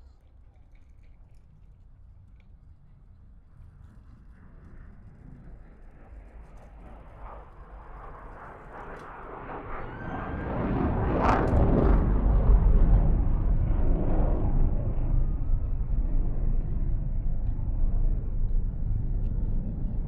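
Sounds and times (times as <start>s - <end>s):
distant jet roar: 4.6s - 20.0s.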